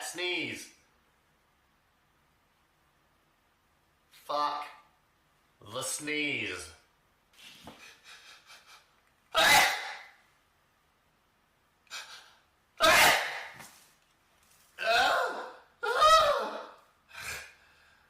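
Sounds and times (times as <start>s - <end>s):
man sneezing: 9.3s - 10.2s, 11.9s - 13.7s.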